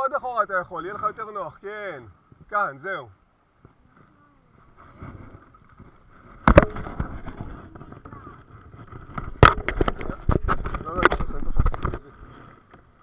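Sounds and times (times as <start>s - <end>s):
faint distant voices: 0.0s - 5.6s, 6.8s - 13.0s
water sloshing around boat: 0.0s - 13.0s
sharp knocks: 6.4s - 7.6s, 9.1s - 11.9s.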